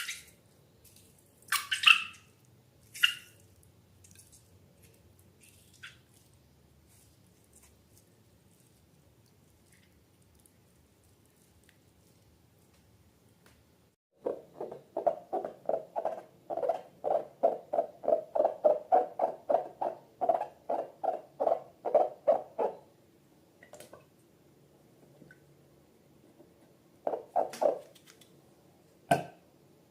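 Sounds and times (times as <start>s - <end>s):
wet slime squelches: 0.0s - 13.4s.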